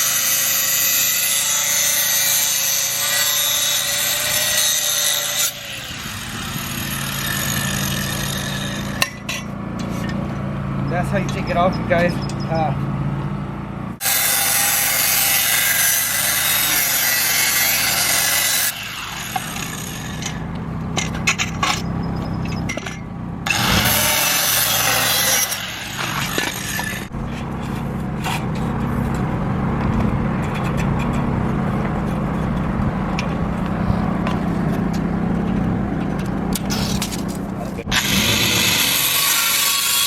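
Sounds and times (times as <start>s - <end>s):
power tool cutting steel: 0.0s - 9.2s, 14.0s - 20.4s, 23.4s - 27.2s, 37.9s - 40.0s
metal scraping and clatter: 14.1s - 40.0s.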